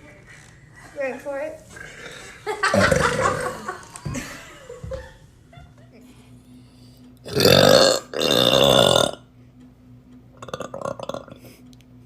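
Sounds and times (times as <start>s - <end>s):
person burping loudly: 1.8s - 3.8s, 7.2s - 9.3s, 10.4s - 11.4s.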